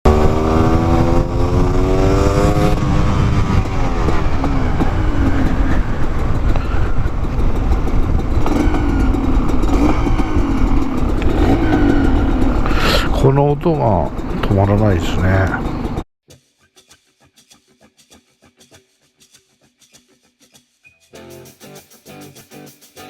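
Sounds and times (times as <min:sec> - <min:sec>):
two-stroke motorcycle engine revving: 0:00.0 - 0:16.0
wind rumble on microphone: 0:00.1 - 0:13.3.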